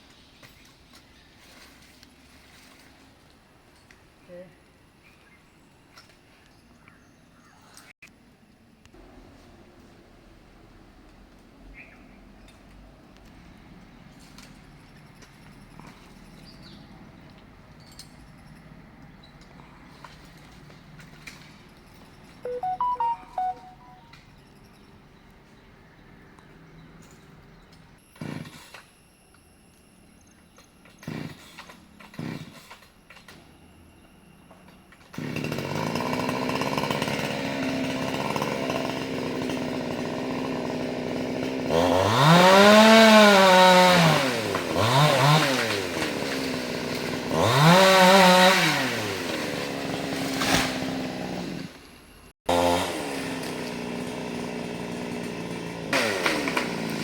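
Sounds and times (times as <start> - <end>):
chainsaw engine idling and revving: 28.2 - 28.8, 30.9 - 32.9, 35.0 - 57.0.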